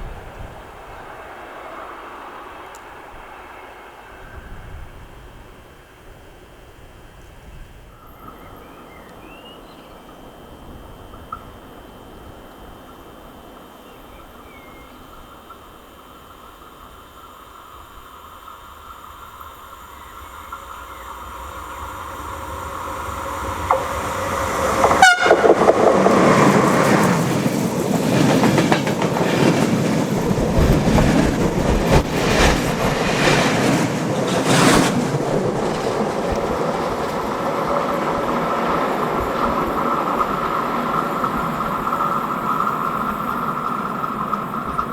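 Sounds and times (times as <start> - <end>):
rush of passing locomotive: 0.0 - 44.9
train rumble passing: 0.0 - 44.9
wheels clattering over rail joints: 22.2 - 44.9.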